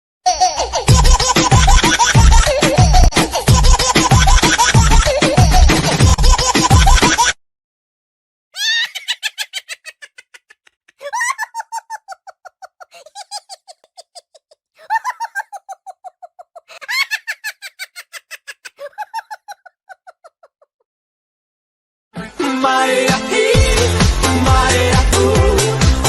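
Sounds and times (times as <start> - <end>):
animal calling in rapid pitched notes: 8.6 - 10.5.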